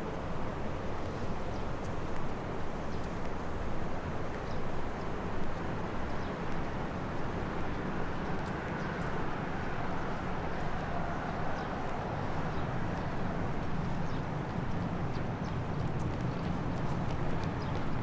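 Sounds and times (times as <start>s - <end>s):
faint ticks: 1.8s - 3.5s, 8.2s - 9.2s.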